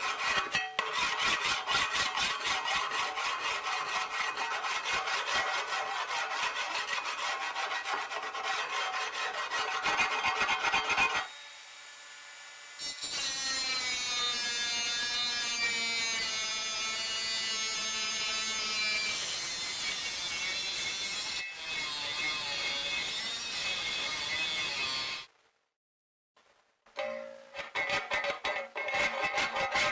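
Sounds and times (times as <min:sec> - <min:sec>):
hand tool sawing: 0:00.0 - 0:11.3, 0:27.8 - 0:29.9.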